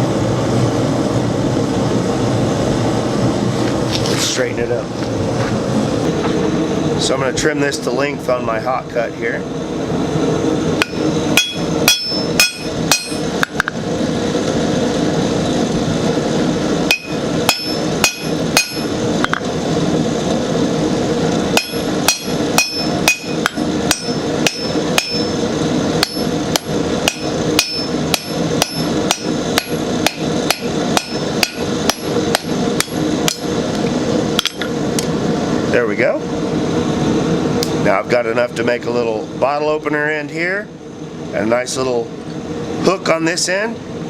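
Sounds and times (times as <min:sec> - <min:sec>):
hammer striking hot steel: 0:10.8 - 0:13.8, 0:16.9 - 0:19.5, 0:21.5 - 0:33.5, 0:34.4 - 0:34.7.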